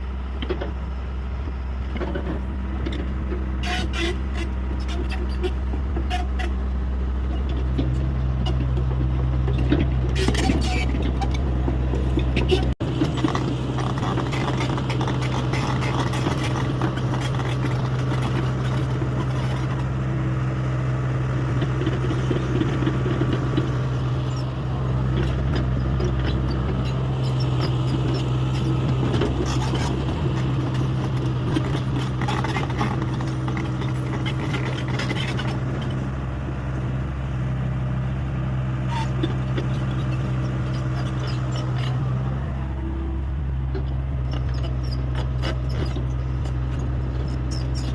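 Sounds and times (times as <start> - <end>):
excavator diesel engine running: 0.0 - 47.9
knocks and scrapes: 7.3 - 20.0, 21.5 - 36.2, 38.9 - 42.3, 43.7 - 47.9.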